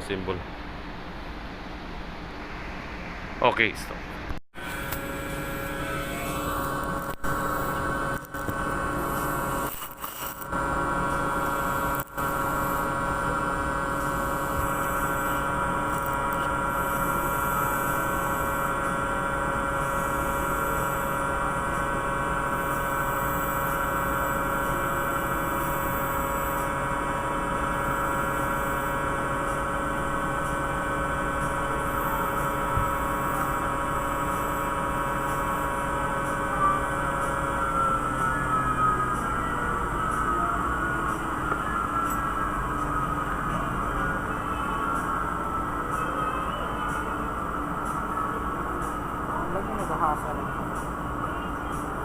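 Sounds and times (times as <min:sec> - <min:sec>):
steady machinery drone: 0:00.0 - 0:52.0.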